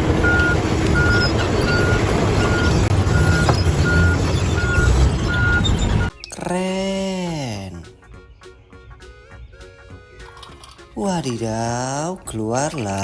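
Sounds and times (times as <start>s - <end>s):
diesel engine rumbling: 0.0s - 13.0s
reversing alarm beeping: 0.2s - 6.2s.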